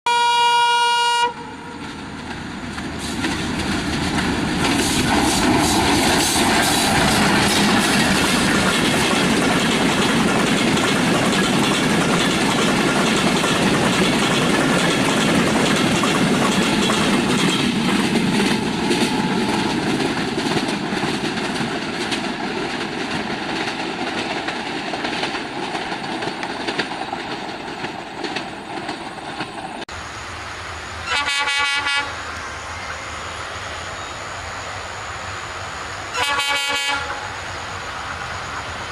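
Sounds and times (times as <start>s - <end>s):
train horn: 0.1s - 1.9s, 31.0s - 33.0s, 36.1s - 37.4s
train wheels clattering over rail joints: 1.8s - 29.8s.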